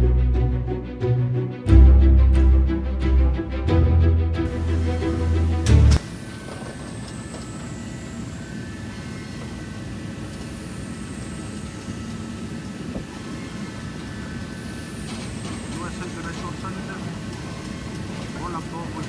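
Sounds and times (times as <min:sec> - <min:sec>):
low outdoor rumble: 0:00.0 - 0:08.2
faint high whine: 0:04.5 - 0:19.0.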